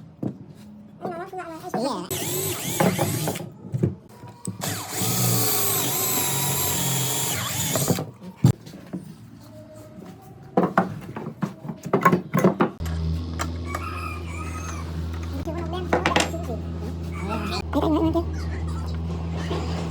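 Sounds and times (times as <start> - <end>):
electric drill whining: 2.1 - 3.4, 4.6 - 8.1.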